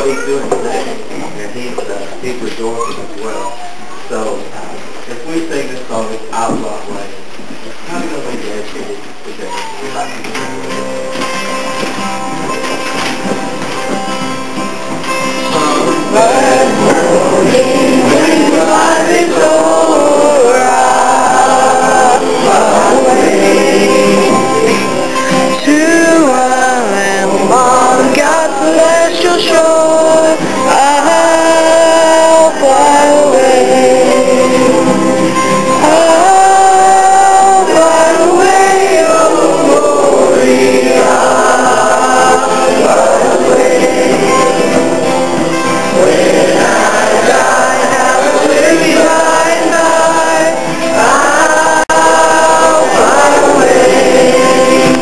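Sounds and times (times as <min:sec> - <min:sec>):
voices singing gospel song: 0:12.5 - 0:55.0.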